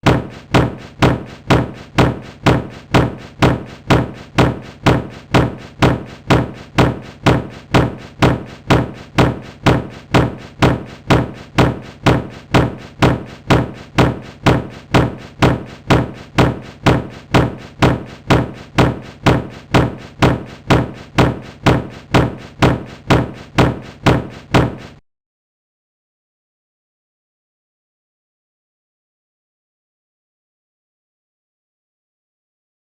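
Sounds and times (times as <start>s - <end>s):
dull thuds: 0.0s - 25.0s.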